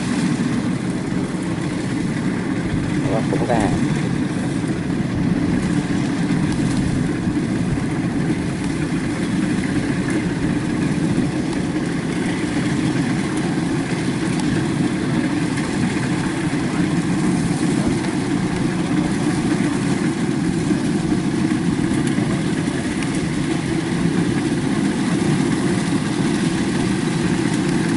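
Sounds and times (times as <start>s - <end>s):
combine harvester diesel engine: 0.0s - 27.9s.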